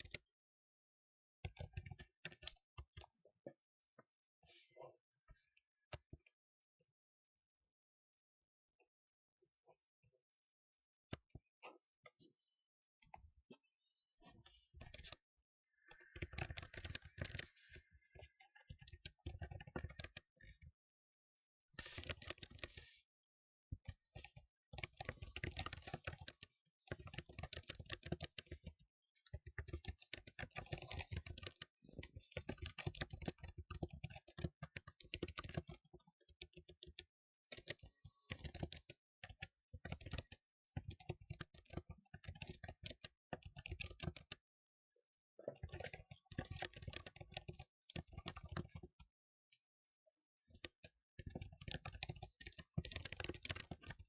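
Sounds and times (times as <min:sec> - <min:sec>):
typing on computer keyboard: 0:00.0 - 0:00.2, 0:15.9 - 0:20.3, 0:21.8 - 0:22.8, 0:23.8 - 0:44.4, 0:45.5 - 0:49.0, 0:50.5 - 0:54.0.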